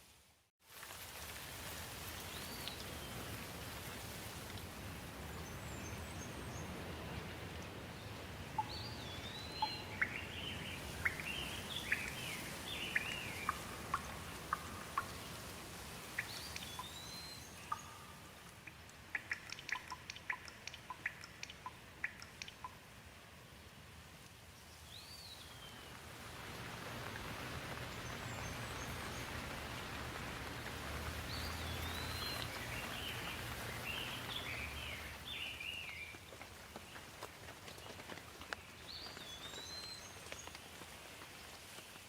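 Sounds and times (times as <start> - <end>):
steady rain falling: 0.0 - 42.0
birds chirping: 5.4 - 22.8, 27.5 - 36.2
sharp drips tapping: 8.6 - 12.2, 12.8 - 15.5, 16.1 - 22.8.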